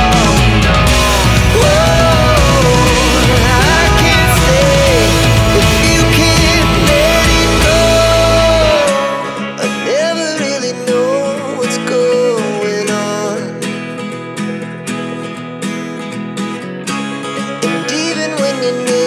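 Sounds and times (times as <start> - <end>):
deep bass: 0.0 - 8.9
guitar-led song: 0.0 - 19.0.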